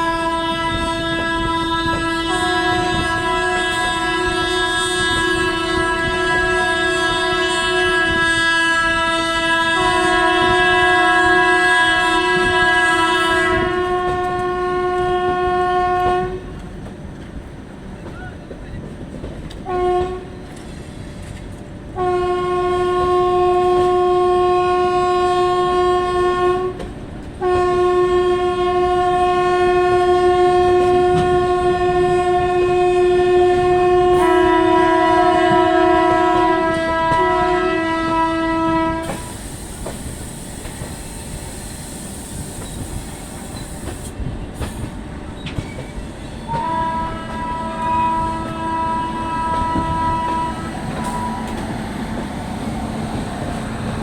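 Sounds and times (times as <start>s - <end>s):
lower second horn: 0.0s - 16.5s, 19.7s - 20.4s, 22.0s - 39.4s, 46.5s - 54.0s
locomotive horn blasts: 0.0s - 16.6s, 19.6s - 20.4s, 22.0s - 39.4s, 46.5s - 51.7s
train rumble and clickety-clack: 0.0s - 54.0s.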